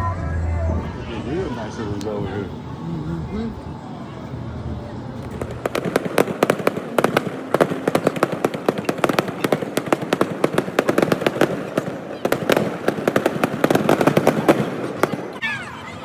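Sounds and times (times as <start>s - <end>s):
fireworks crackling pops: 5.2s - 15.4s.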